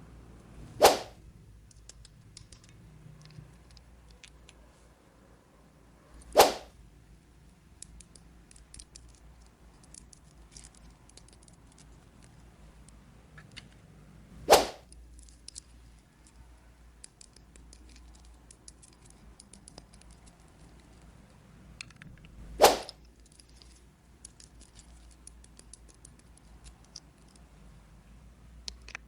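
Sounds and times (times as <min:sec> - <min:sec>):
loud swish: 0:00.8 - 0:01.2, 0:06.3 - 0:06.7, 0:14.4 - 0:14.8, 0:22.6 - 0:23.0
plastic toy pieces clicking: 0:01.7 - 0:04.6, 0:07.6 - 0:13.8, 0:14.8 - 0:27.6, 0:28.6 - 0:29.0.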